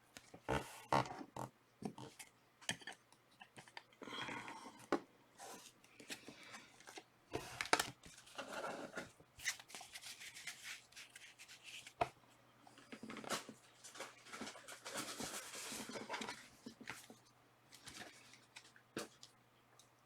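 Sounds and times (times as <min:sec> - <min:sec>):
cards and packaging handled: 0:05.4 - 0:12.2.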